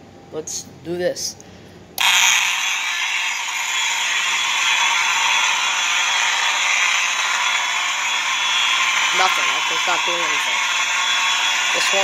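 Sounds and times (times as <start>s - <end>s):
fire alarm horns steady tone: 2.9s - 12.0s.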